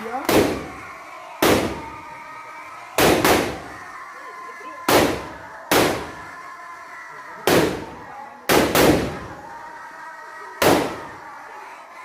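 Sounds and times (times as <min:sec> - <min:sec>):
faint background music: 0:00.0 - 0:12.0
firecracker bangs with echo: 0:00.2 - 0:00.8, 0:01.4 - 0:02.0, 0:03.0 - 0:03.8, 0:04.8 - 0:06.3, 0:07.4 - 0:09.4, 0:10.6 - 0:11.2.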